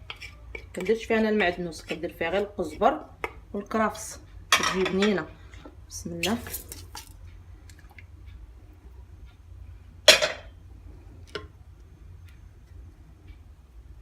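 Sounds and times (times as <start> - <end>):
low steady hum: 0.0 - 14.0
kitchenware clinking: 4.5 - 5.2, 10.1 - 10.5.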